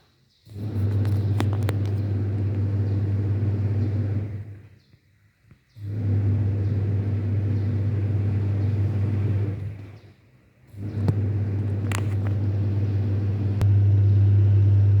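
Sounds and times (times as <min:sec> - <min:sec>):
washing machine motor humming: 0:00.5 - 0:04.8, 0:05.8 - 0:15.0.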